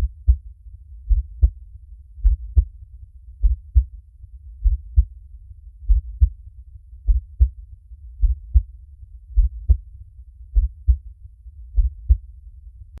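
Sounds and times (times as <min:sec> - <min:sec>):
heartbeat: 0:00.0 - 0:01.6, 0:02.2 - 0:02.8, 0:03.4 - 0:04.0, 0:04.6 - 0:05.2, 0:05.8 - 0:06.4, 0:07.0 - 0:07.6, 0:08.2 - 0:08.7, 0:09.3 - 0:09.9, 0:10.5 - 0:11.1, 0:11.7 - 0:12.3
low rumble: 0:00.0 - 0:13.0.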